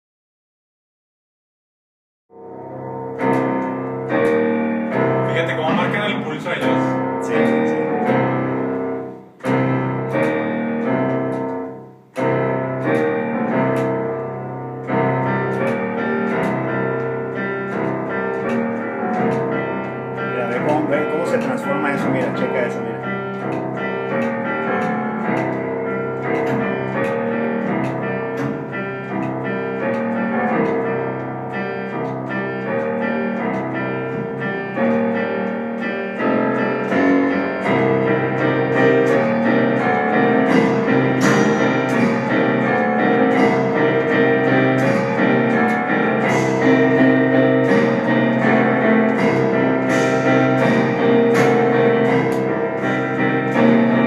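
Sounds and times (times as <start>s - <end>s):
keyboard sustained chords: 2.4s - 54.0s
sharp percussive hits: 36.2s - 54.0s.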